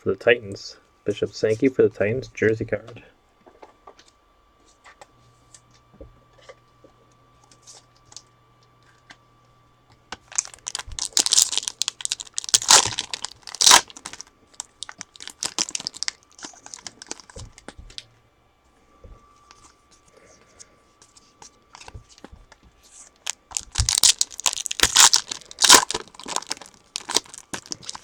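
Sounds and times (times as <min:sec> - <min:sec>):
card pack wrapper tearing: 0:10.3 - 0:17.4, 0:23.3 - 0:28.0.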